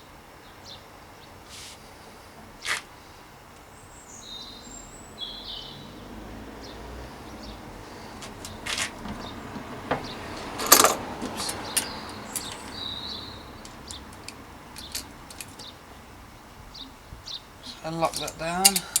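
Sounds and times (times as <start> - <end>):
steel hub parts clinking: 8.2 - 15.8, 17.7 - 19.0.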